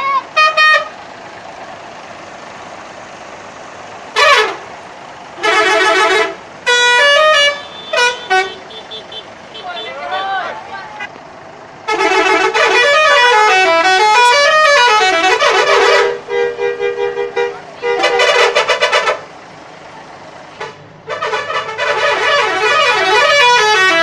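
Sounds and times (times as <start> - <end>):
multi-tone musical bus horn: 0.0 - 1.0, 4.1 - 4.7, 5.4 - 11.1, 11.8 - 19.3, 20.5 - 24.0.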